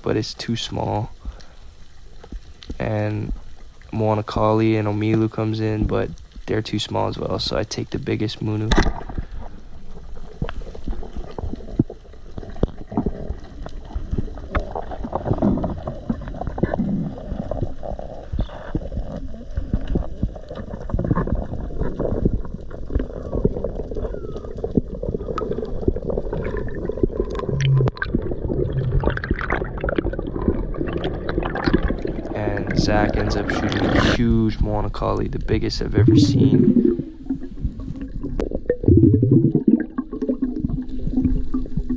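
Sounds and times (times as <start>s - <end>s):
underwater rushing water: 0.0s - 41.9s
sharp clicks and crackles: 8.6s - 28.3s.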